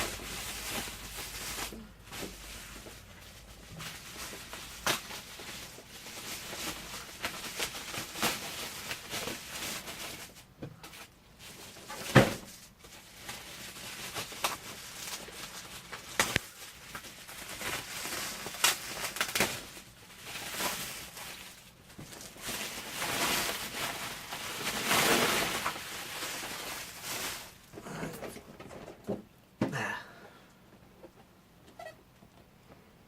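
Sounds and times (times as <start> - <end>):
packaging rustling and sliding: 11.0 - 27.7.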